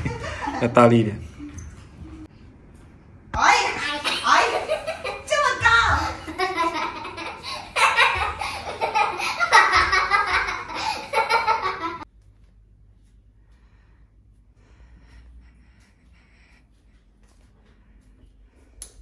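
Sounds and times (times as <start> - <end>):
people laughing hard: 0.0 - 0.8, 6.1 - 12.0.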